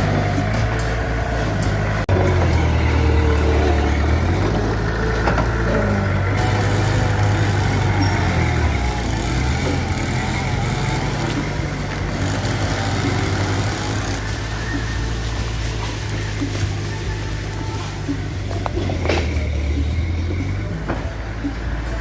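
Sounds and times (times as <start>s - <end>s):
bulldozer diesel engine running: 0.0s - 22.0s.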